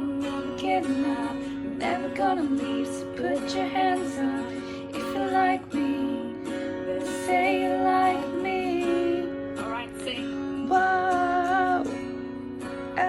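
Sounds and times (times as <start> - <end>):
woman singing layered duet: 0.0 - 13.0.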